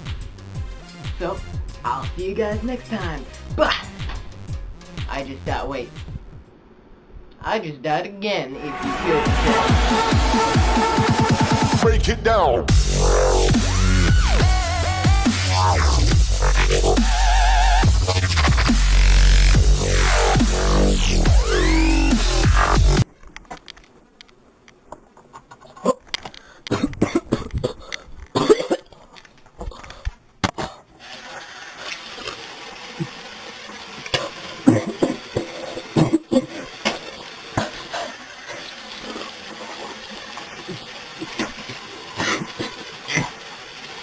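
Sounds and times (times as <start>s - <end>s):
dubstep music: 0.0s - 6.2s, 8.6s - 23.0s
low room noise: 22.8s - 44.0s
objects being handled: 23.1s - 31.3s.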